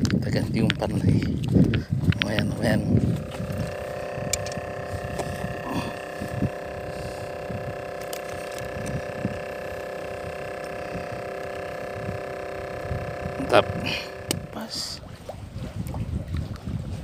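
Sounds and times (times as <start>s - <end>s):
faint low rumbling: 1.1s - 16.3s
drone of held tones: 2.2s - 15.1s.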